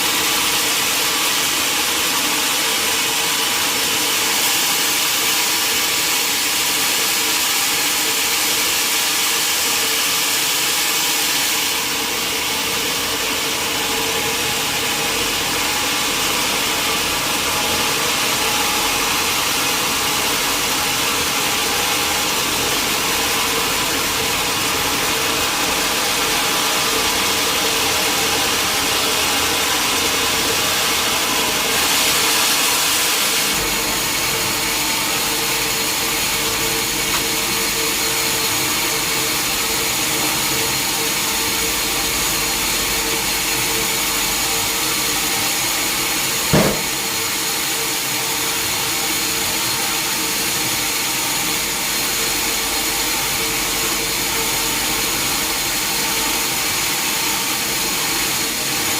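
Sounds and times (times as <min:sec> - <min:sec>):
sawmill machinery humming: 0:00.0 - 0:58.9
sharp knock: 0:46.5 - 0:47.0.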